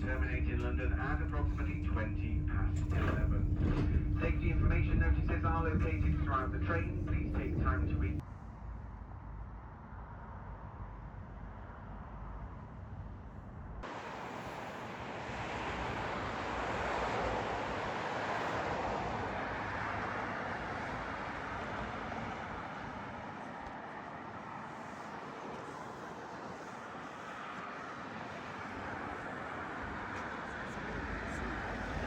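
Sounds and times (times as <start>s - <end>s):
train rumbling: 0.0s - 8.2s.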